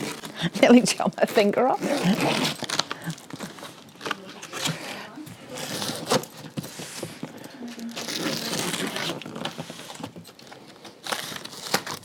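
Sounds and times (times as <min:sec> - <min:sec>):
packaging crinkling and rustling: 0:00.0 - 0:12.0.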